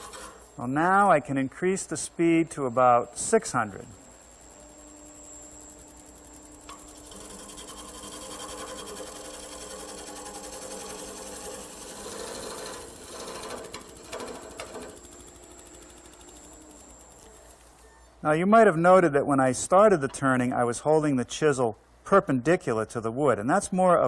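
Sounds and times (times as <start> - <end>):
chisel scraping spinning wood: 0.0 - 0.4, 6.9 - 15.3
lathe motor hum: 4.0 - 17.4.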